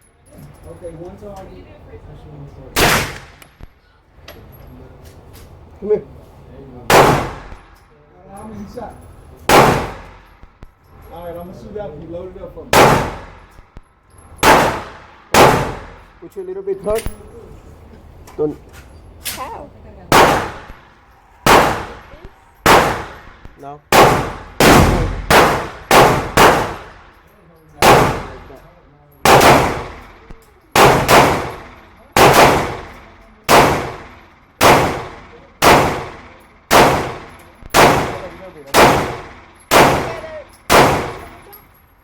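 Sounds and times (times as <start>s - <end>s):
shotgun blasts echoing: 2.8s - 3.4s, 6.9s - 7.7s, 9.5s - 10.3s, 12.7s - 13.6s, 14.4s - 16.1s, 20.1s - 27.1s, 27.8s - 28.6s, 29.2s - 41.4s.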